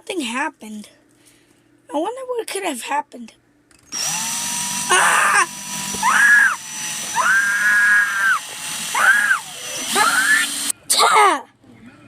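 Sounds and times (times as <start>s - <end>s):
person shouting: 4.9s - 6.6s.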